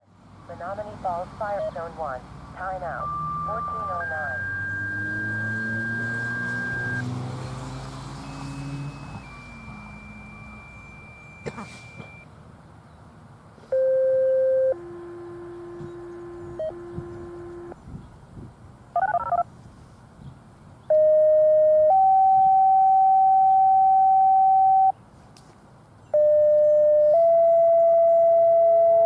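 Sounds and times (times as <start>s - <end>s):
dial-pad-like tones: 2.6s - 7.1s, 8.2s - 12.2s, 13.8s - 17.8s, 19.0s - 19.5s, 20.9s - 24.9s, 26.2s - 29.0s
two-tone paging tones from radio: 2.6s - 7.1s, 8.2s - 12.2s, 13.8s - 17.8s, 20.9s - 24.9s.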